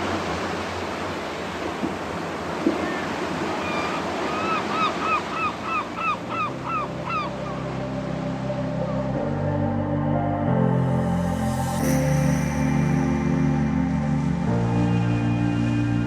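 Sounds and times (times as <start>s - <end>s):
sea surf: 0.0s - 9.5s, 11.5s - 16.0s
low music drone: 6.5s - 16.0s.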